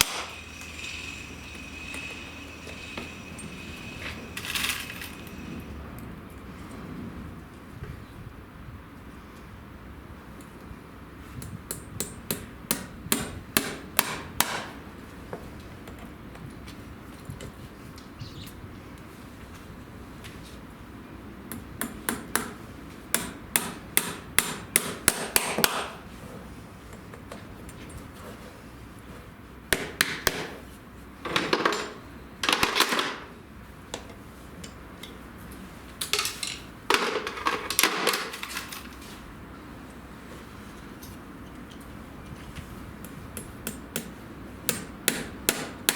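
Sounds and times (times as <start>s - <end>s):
hammer tapping horseshoe nail: 0.0s - 5.4s, 11.4s - 14.8s, 21.5s - 26.0s, 29.7s - 30.6s, 43.0s - 45.9s.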